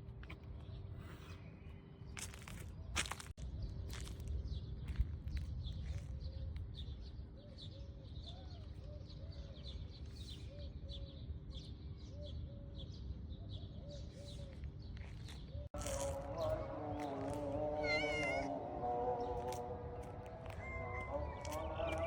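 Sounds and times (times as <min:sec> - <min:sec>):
birds high chirps: 0:00.2 - 0:22.0.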